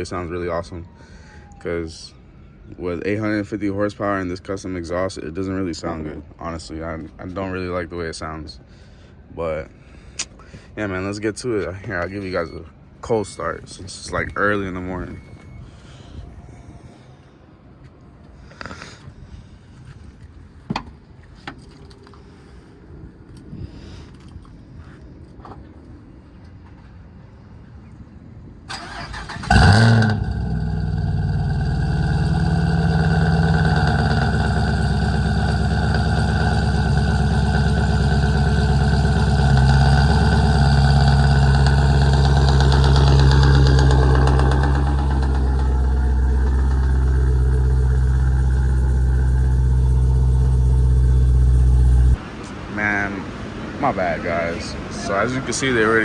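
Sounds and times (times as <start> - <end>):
engine cranking: 28.7 - 52.2
loud engine idle: 28.7 - 52.2.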